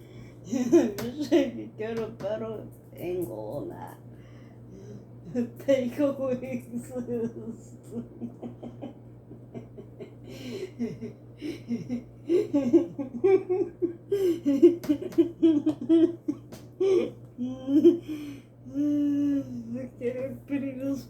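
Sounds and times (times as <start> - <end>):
low hum: 0.0 - 21.0
woman laughing: 0.5 - 1.6, 5.3 - 19.6.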